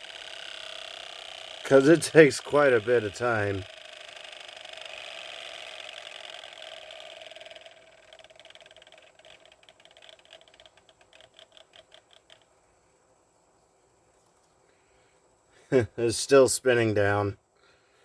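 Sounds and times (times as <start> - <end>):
brush turbine whirring: 0.0 - 12.4
brush ticking slowing down: 0.0 - 12.5.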